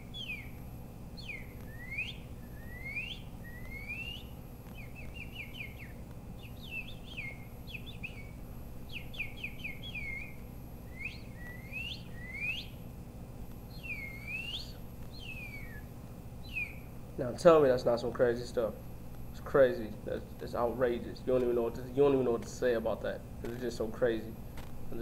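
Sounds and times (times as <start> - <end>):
whistled bird-like calls: 0.0 - 0.6, 1.2 - 12.8, 13.7 - 16.9.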